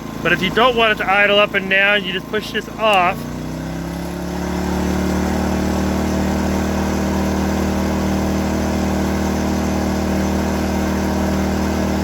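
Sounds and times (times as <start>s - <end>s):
generator engine running: 0.0s - 12.0s.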